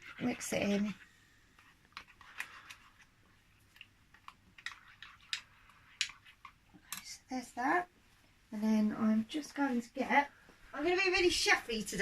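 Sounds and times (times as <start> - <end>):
utensil scraping a bowl: 0.0 - 3.1, 4.2 - 7.1.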